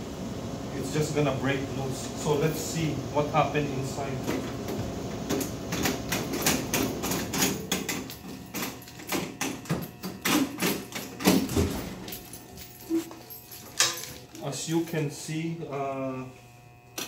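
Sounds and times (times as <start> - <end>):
keys and lock clicking: 10.2 - 14.5.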